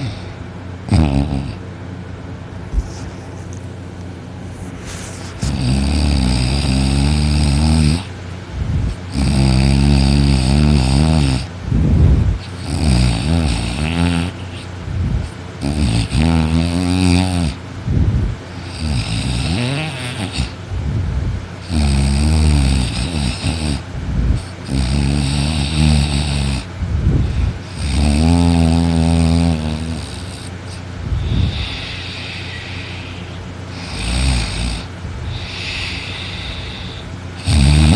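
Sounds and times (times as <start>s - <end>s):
loud rattling snoring: 0.0s - 1.6s, 5.4s - 20.6s, 21.6s - 37.9s
short breaths: 31.0s - 33.6s, 35.2s - 37.4s.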